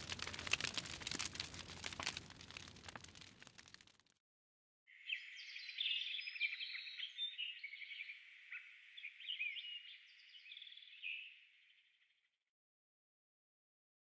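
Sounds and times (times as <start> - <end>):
songbirds chirping: 4.9 - 12.1.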